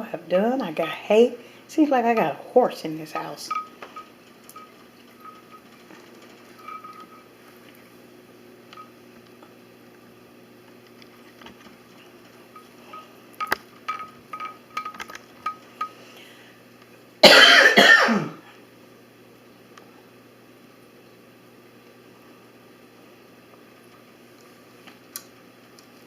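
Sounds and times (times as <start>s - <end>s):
man coughing hard: 17.2s - 18.4s.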